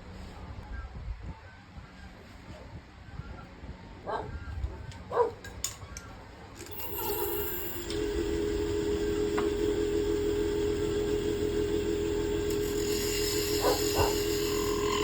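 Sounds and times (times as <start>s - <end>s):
lathe motor humming: 6.6s - 15.0s.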